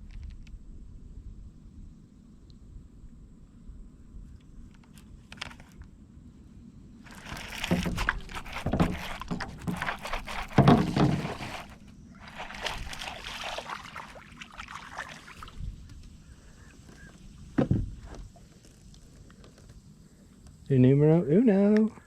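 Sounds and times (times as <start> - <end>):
fish thrashing at water surface: 7.0 - 15.7
water splashing and sloshing: 7.0 - 16.2.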